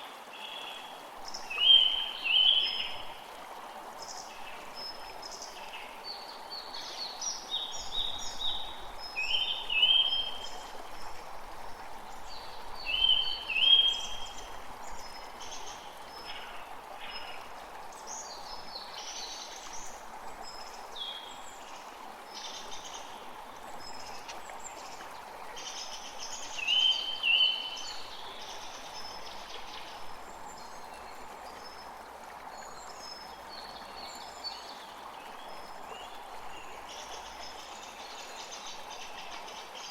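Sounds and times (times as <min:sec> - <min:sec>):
creek water running: 0:00.0 - 0:39.9.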